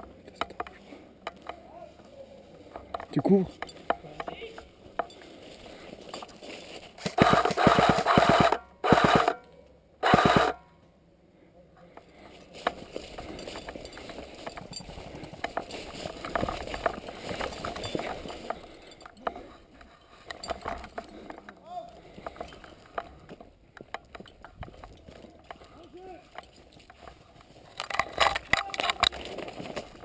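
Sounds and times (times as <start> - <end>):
airsoft gun full-auto bursts: 7.0 - 9.4, 10.0 - 10.6
shuffling and rustling movement: 12.0 - 23.4.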